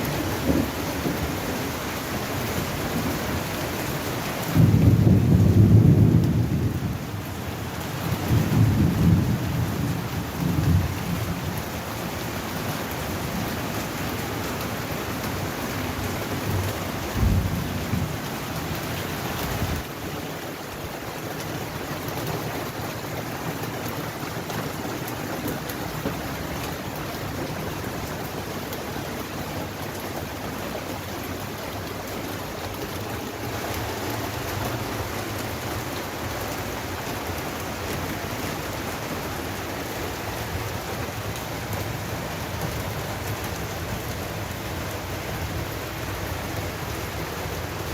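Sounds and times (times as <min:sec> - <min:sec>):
steady rain falling: 0:00.0 - 0:47.9
thunder rumbling: 0:04.5 - 0:07.0, 0:17.2 - 0:18.2.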